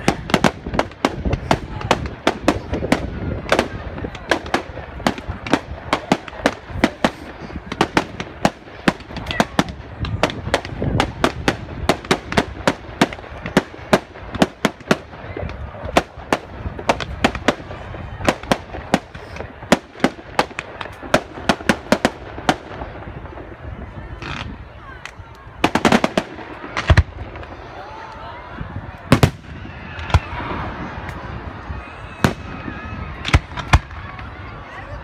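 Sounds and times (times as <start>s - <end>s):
fireworks cracking and banging: 0.0s - 35.0s.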